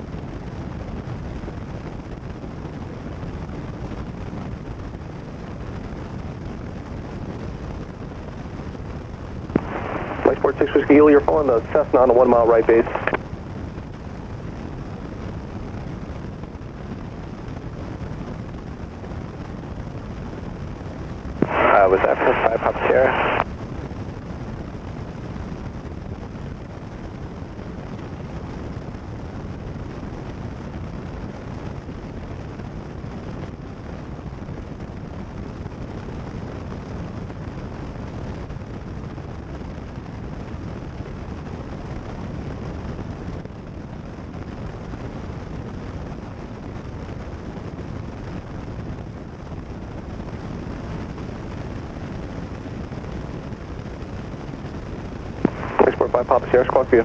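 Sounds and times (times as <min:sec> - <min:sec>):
airplane engine and propeller drone: 0:09.5 - 0:15.0, 0:55.4 - 0:57.0.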